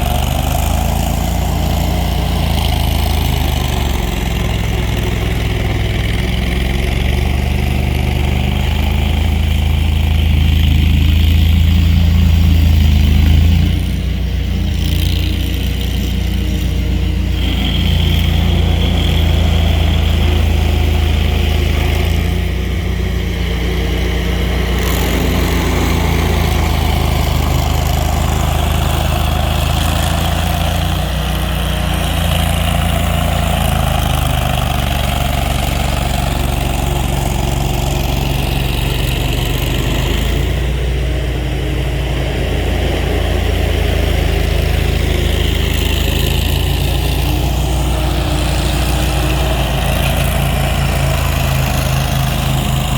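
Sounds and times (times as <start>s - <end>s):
large engine humming steadily: 0.0s - 52.9s.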